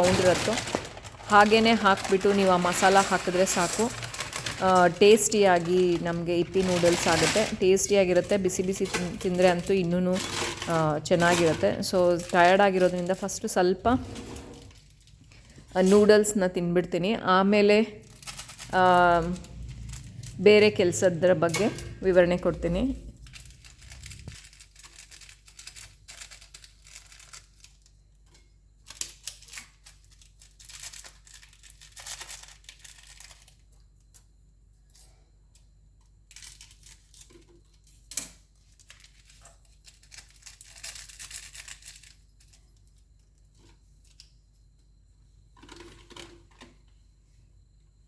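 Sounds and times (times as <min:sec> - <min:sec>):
rustling and scraping of objects: 0:00.0 - 0:16.4, 0:29.4 - 0:47.5.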